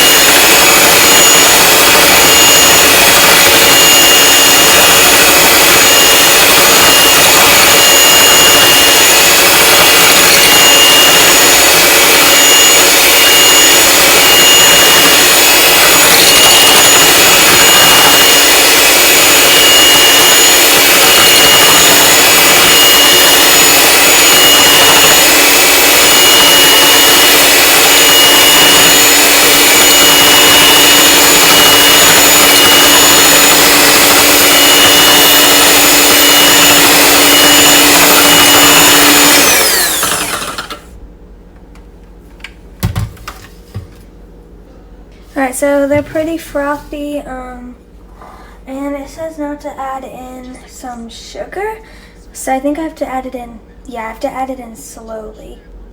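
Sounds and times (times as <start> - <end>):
electric mixer whining: 0.0 - 41.0.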